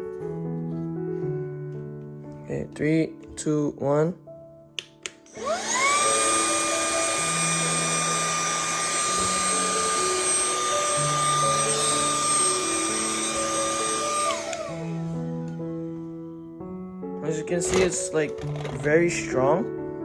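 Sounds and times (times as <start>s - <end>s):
vacuum motor whining: 5.3s - 15.6s, 17.6s - 18.9s.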